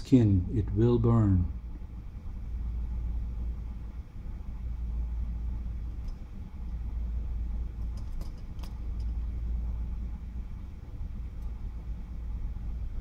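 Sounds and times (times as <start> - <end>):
low-pitched hum: 0.0 - 13.0.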